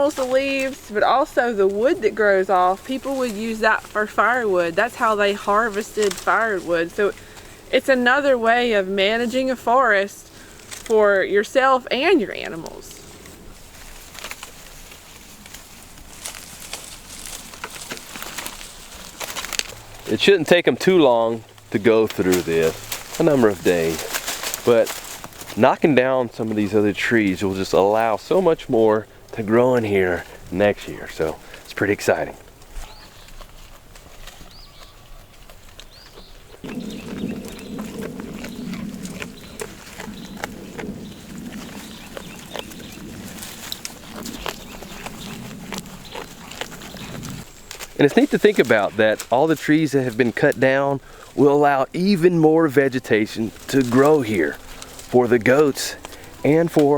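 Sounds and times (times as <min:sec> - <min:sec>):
leaves rustling: 0:00.0 - 0:56.9
twigs cracking: 0:00.0 - 0:56.9
bird chirps: 0:34.3 - 0:47.4.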